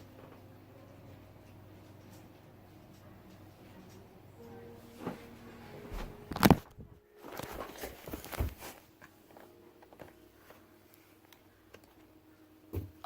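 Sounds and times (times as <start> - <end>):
rustling: 4.8 - 11.4.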